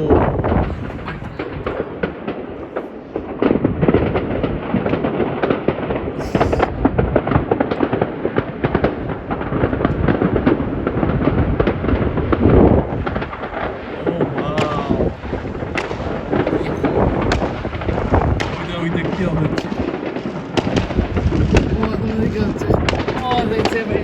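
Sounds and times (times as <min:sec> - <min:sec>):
fireworks bangs and pops: 0:00.0 - 0:24.0
high hiss: 0:06.2 - 0:06.7.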